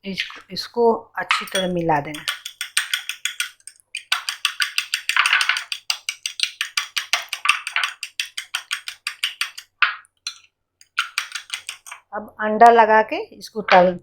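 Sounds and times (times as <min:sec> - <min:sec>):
whisk clicking against bowl: 0:01.3 - 0:12.0.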